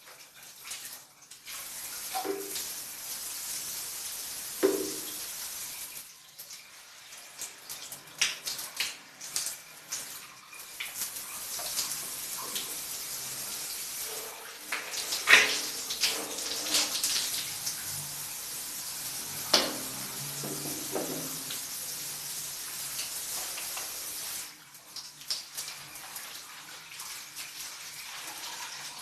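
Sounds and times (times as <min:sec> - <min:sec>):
shower water splashing: 0:00.0 - 0:29.0
sharp water splashes: 0:14.1 - 0:18.2.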